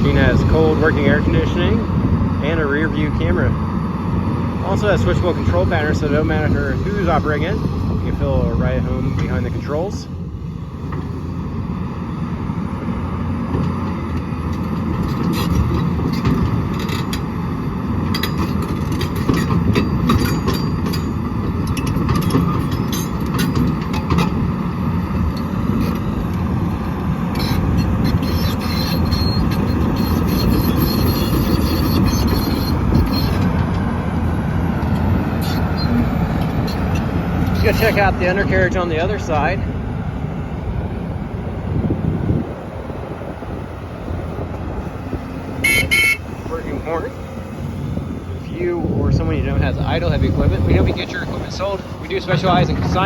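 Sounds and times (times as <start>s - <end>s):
excavator diesel engine running: 0.0s - 53.0s
sharp metallic clanks: 18.1s - 24.4s
high squeal: 27.4s - 33.4s, 35.4s - 38.3s.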